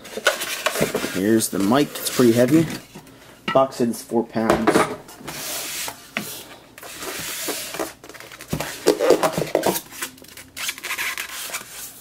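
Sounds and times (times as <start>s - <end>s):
packaging rustling: 6.8s - 12.0s.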